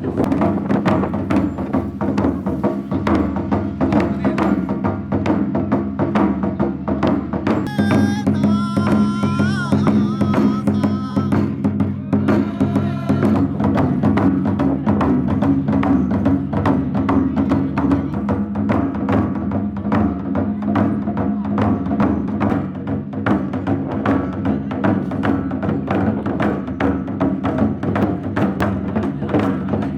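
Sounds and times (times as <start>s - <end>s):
fast percussion beat: 0.0s - 29.9s
high sliding melody: 7.7s - 10.9s.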